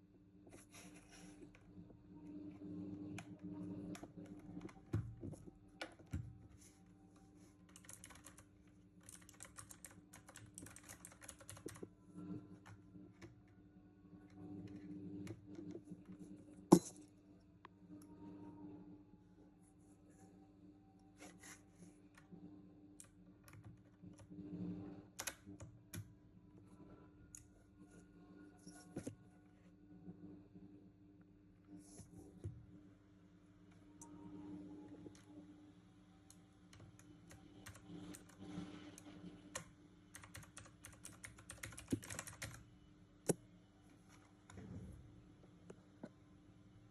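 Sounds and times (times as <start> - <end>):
low steady hum: 0.0 - 46.9
mechanical keyboard typing: 7.6 - 11.9, 25.2 - 26.1, 36.7 - 38.5, 39.5 - 42.6.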